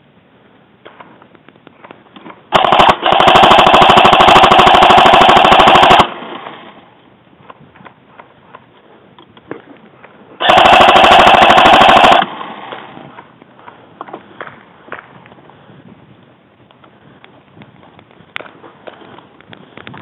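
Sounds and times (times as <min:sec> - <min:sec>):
airsoft gun full auto bursts: 0:02.5 - 0:06.8, 0:10.4 - 0:12.9.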